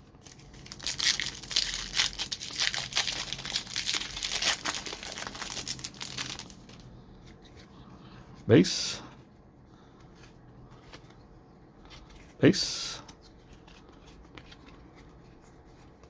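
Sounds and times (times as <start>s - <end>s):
foil wrapper crinkling and tearing: 0.2s - 6.9s.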